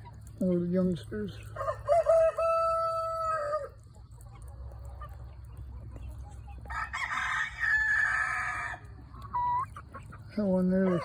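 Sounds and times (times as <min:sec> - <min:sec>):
chickens clucking: 0:00.0 - 0:11.0
rooster crowing: 0:01.6 - 0:03.7.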